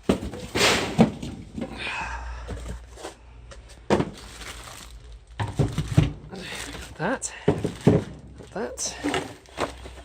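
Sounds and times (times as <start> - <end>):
box thud: 0.0 - 1.7, 3.9 - 4.3, 7.4 - 10.0.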